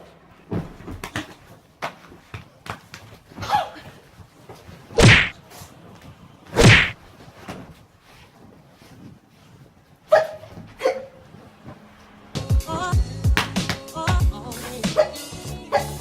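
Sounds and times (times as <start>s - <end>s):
knocks and thuds: 5.0s - 5.3s, 6.6s - 7.0s
loud heavy slams: 5.0s - 5.4s, 6.6s - 7.0s.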